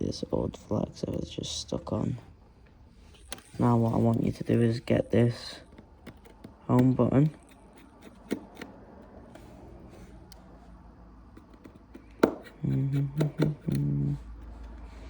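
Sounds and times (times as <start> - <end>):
small tool clicks and taps: 5.7 - 8.8
person humming or mumbling: 12.6 - 14.3.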